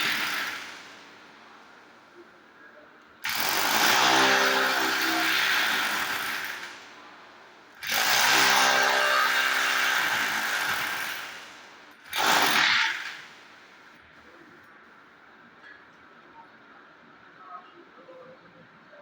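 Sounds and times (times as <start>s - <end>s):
power tool running in bursts: 0.0s - 1.0s, 3.2s - 6.9s, 7.8s - 13.5s.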